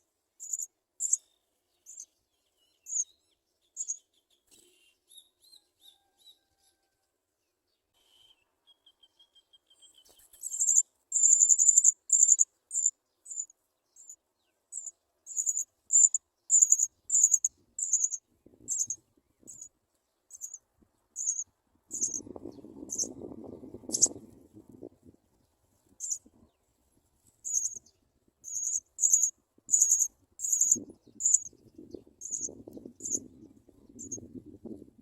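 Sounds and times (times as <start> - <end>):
nestlings peeping: 0.4 - 1.2, 1.8 - 2.1, 10.0 - 19.7, 20.3 - 20.6, 21.2 - 24.2, 26.0 - 26.3, 27.4 - 33.3, 33.9 - 34.3.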